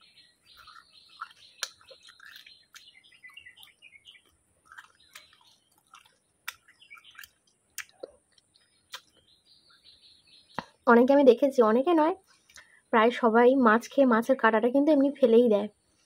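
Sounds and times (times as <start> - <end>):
mouth chewing crunchy bones: 0.0 - 9.4.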